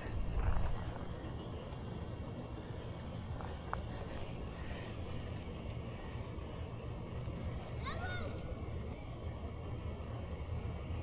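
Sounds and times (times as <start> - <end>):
crickets chirring: 0.0 - 11.0.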